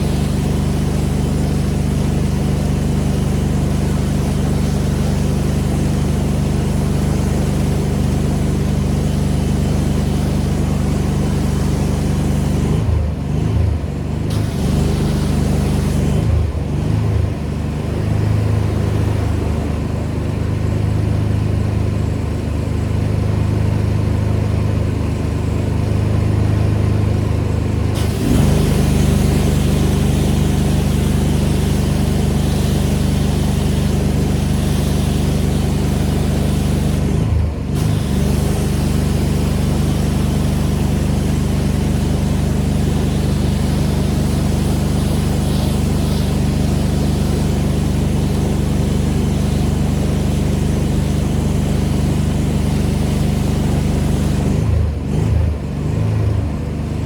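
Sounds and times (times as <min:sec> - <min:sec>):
water spray hissing: 0:00.0 - 0:12.7, 0:14.3 - 0:16.3, 0:28.0 - 0:54.7
pressure washer engine running: 0:00.0 - 0:57.0.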